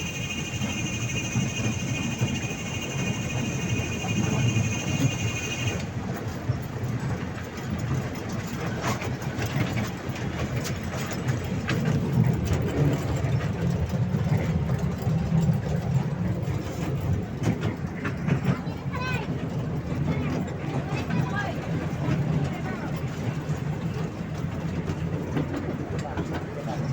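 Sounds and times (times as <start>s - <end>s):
high steady whine: 0.0s - 5.9s
toy train low rumble: 0.0s - 26.9s.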